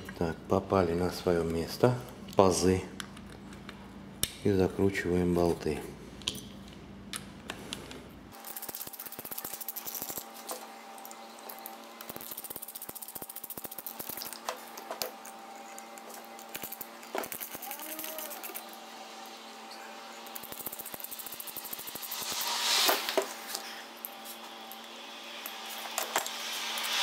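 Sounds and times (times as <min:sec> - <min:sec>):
ratchet wrench clicking: 0:12.1 - 0:14.2, 0:20.3 - 0:22.4.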